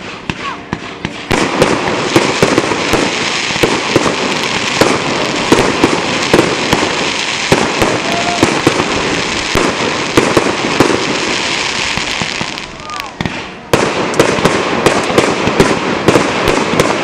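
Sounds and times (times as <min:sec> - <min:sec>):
fireworks bangs: 0:00.0 - 0:17.0
fireworks crackling: 0:00.0 - 0:17.0.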